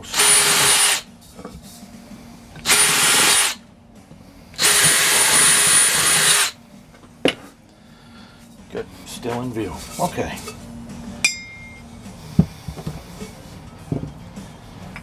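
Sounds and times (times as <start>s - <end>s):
electric drill whining: 0.0s - 1.1s, 2.6s - 3.6s, 4.6s - 6.6s.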